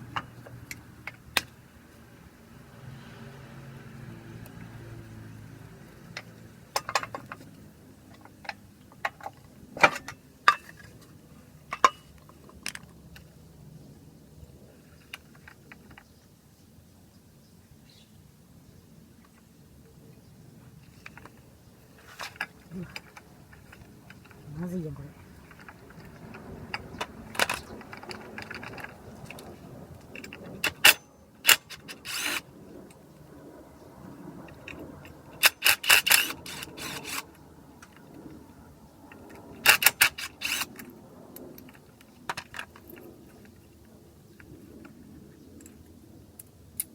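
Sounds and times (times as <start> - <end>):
metal parts clinking and clattering: 25.2 - 32.4, 34.5 - 37.3, 39.6 - 40.8.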